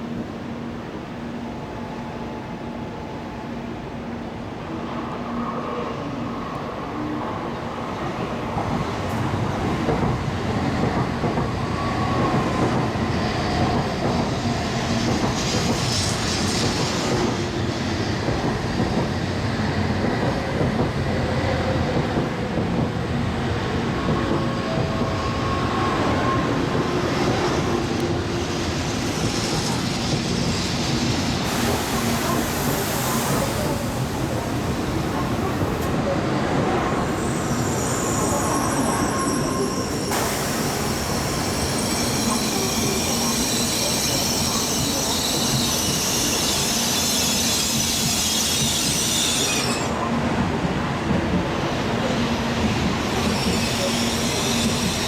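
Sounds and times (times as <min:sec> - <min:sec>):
train running noise: 0:07.7 - 0:55.0
faint train whining tones: 0:23.3 - 0:55.0.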